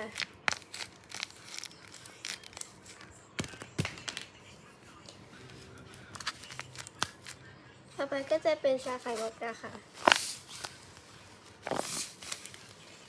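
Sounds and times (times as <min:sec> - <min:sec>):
taped paper crinkling: 0:00.0 - 0:04.1, 0:06.0 - 0:07.4, 0:09.9 - 0:13.0.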